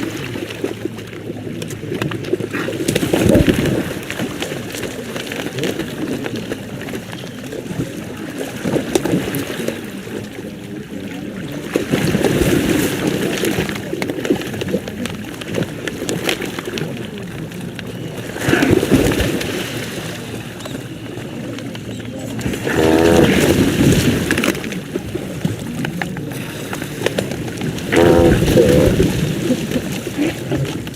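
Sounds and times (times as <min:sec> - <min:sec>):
water noise: 0:00.0 - 0:30.9
murmur: 0:00.8 - 0:30.9
pelicans calling: 0:22.6 - 0:24.1, 0:27.9 - 0:29.7.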